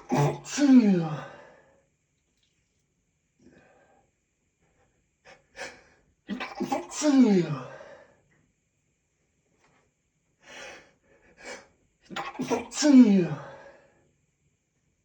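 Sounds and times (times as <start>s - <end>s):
man sneezing: 0.0s - 1.5s, 5.6s - 7.8s, 11.5s - 13.7s
man gasping breaths: 1.0s - 1.8s, 7.6s - 8.2s, 13.3s - 14.0s.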